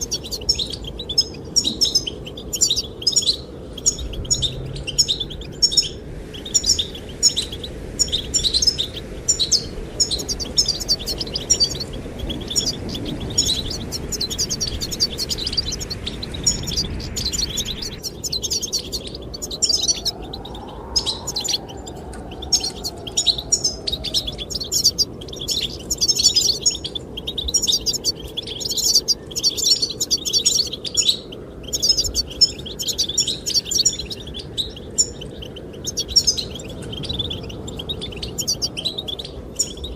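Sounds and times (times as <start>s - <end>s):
goldfinches twittering: 0.0s - 39.9s
wind rushing: 3.5s - 28.3s.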